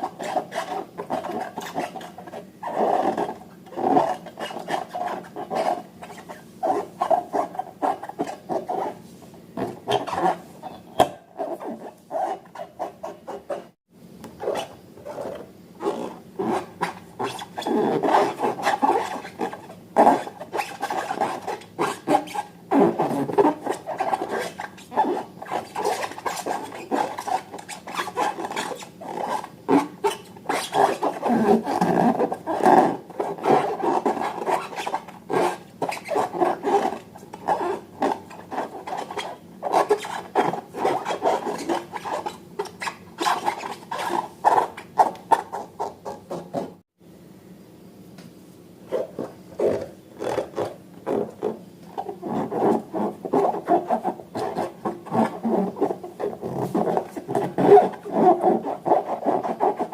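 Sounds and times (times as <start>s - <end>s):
hands rubbing rubber balloons: 0.0s - 13.8s, 14.4s - 46.8s, 48.9s - 59.9s
short squeaky sweeps: 14.4s - 45.7s.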